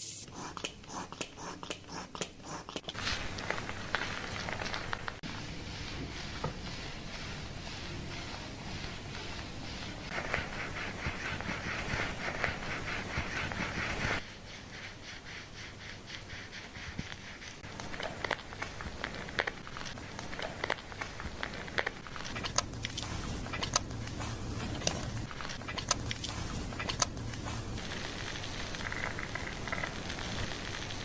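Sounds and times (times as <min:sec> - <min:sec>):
fingers scrubbing lathered scalp: 0:00.2 - 0:31.0
foam crackling: 0:03.0 - 0:14.2, 0:17.6 - 0:31.0.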